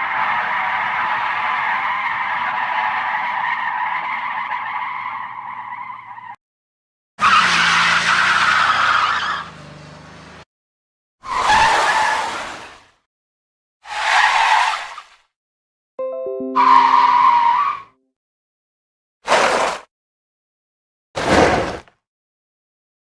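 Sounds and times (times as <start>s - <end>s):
car tyres squealing: 0.0s - 6.4s, 7.2s - 10.2s, 11.3s - 12.4s, 13.9s - 15.1s, 16.9s - 17.9s.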